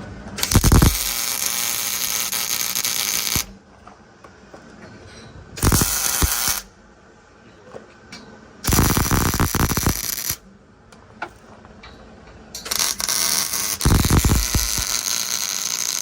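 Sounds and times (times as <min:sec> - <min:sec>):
arc welder crackling sizzle: 0:00.4 - 0:03.6, 0:05.6 - 0:06.7, 0:08.6 - 0:10.4, 0:12.6 - 0:16.0.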